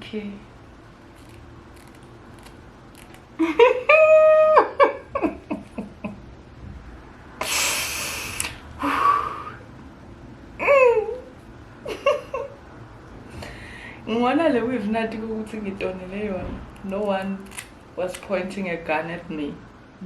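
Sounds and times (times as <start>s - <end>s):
sharp hiss: 7.4s - 8.6s
woman humming: 10.6s - 11.3s.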